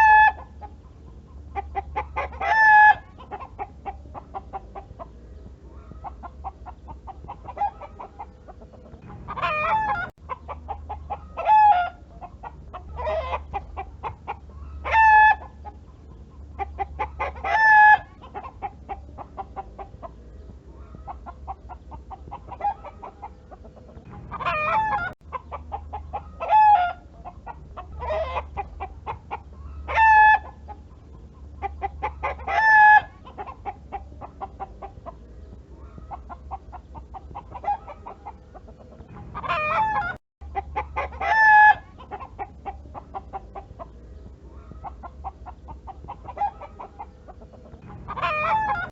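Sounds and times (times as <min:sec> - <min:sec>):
chickens clucking: 0:00.0 - 0:48.9
chicken squawking call: 0:09.1 - 0:10.1, 0:12.9 - 0:15.5, 0:24.2 - 0:25.2, 0:28.0 - 0:30.6, 0:39.4 - 0:40.2, 0:40.8 - 0:43.1, 0:48.1 - 0:48.9.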